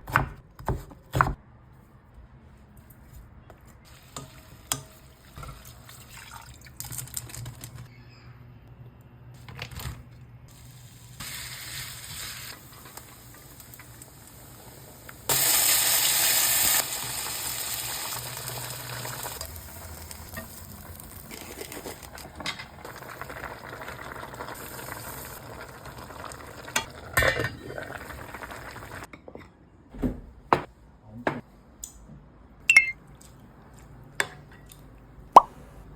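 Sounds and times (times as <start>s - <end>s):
food sizzling in oil: 10.5s - 29.1s
utensils clinking on cookware: 26.8s - 27.8s.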